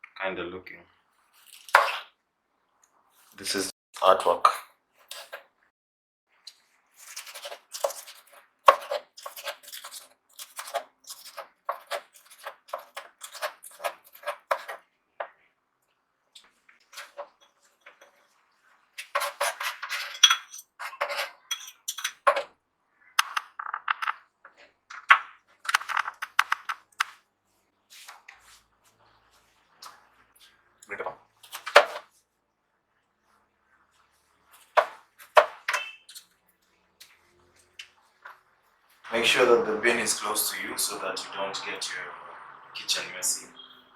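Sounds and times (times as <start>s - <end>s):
knife chopping on cutting board: 7.2s - 14.8s.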